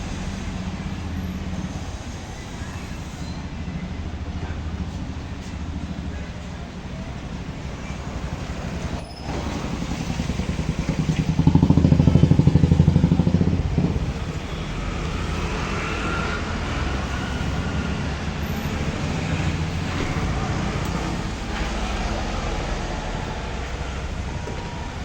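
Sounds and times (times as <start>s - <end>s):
vehicle engine running: 7.2s - 25.0s.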